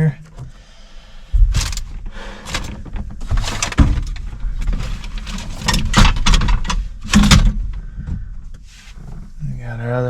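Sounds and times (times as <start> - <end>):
handling noise of parts: 1.3 - 9.4.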